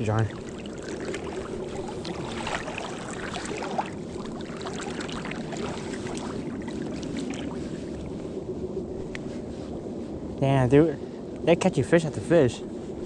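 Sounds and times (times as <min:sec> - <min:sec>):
river water rushing: 0:00.0 - 0:07.6
small water splashes: 0:00.0 - 0:08.1.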